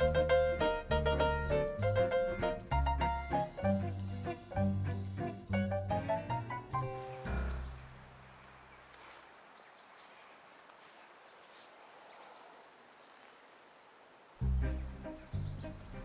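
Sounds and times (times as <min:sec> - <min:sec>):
music: 0:00.0 - 0:07.8, 0:14.4 - 0:16.0
outdoor ambience: 0:06.8 - 0:16.0
bird chirps: 0:08.6 - 0:13.4, 0:14.4 - 0:16.0.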